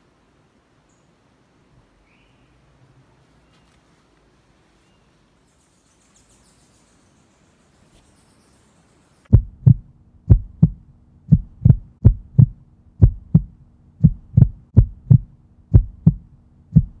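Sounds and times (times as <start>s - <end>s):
faint steady hum: 0.0s - 17.0s
heartbeat thumps: 9.3s - 17.0s.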